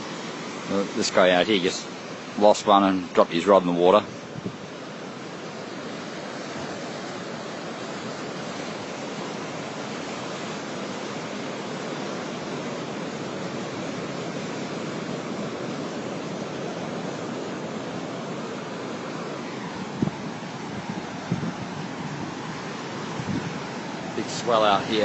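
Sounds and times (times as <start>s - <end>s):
surf breaking over rocky reef: 0.0s - 25.0s.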